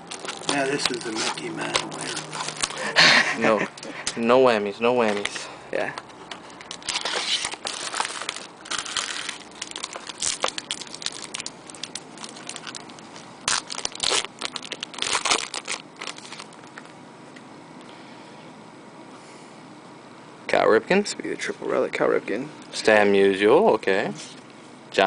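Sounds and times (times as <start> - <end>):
card pack wrapper crinkling and tearing: 0.0 - 3.0, 6.5 - 16.8.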